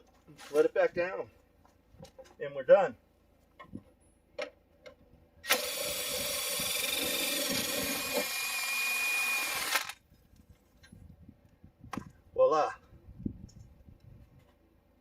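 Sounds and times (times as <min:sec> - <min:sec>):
cordless impact tool running: 0:05.4 - 0:10.0.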